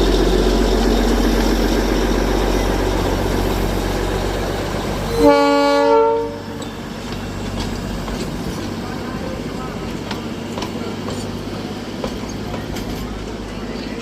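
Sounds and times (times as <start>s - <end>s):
train horn blast: 5.1s - 6.6s.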